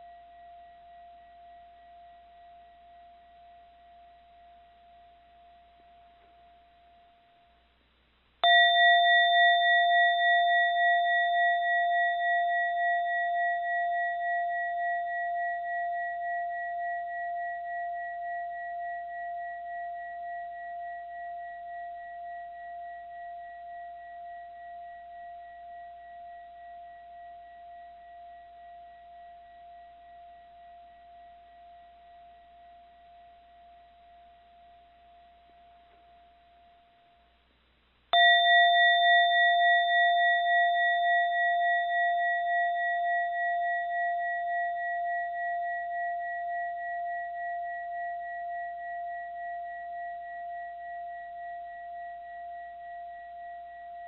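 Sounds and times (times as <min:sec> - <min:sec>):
bell ringing: 0:38.2 - 0:41.4.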